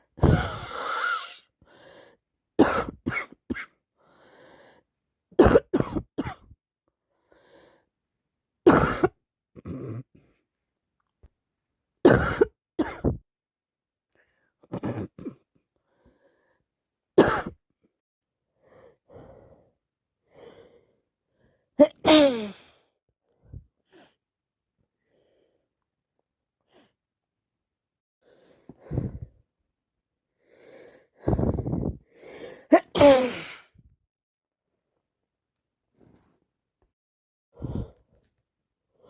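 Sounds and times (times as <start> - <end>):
woman coughing: 2.6 - 3.7, 5.4 - 6.5, 8.7 - 10.0, 12.1 - 13.2, 14.7 - 15.4, 17.2 - 17.6, 21.8 - 22.6, 32.7 - 33.6
woman sneezing: 21.8 - 22.6, 32.7 - 33.7.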